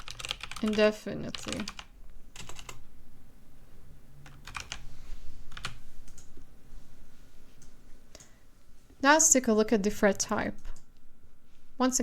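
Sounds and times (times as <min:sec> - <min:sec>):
computer keyboard keystrokes: 0:00.0 - 0:02.8, 0:04.3 - 0:04.8, 0:05.5 - 0:06.3.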